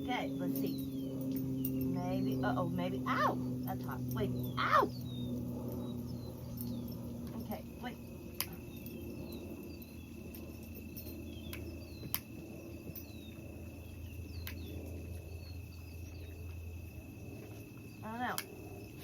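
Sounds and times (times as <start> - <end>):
high-pitched insect drone: 0.0 - 19.0.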